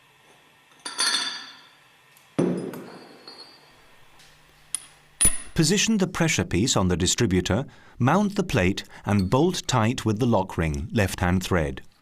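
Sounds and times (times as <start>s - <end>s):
metallic clink: 2.8s - 3.7s, 4.7s - 5.6s.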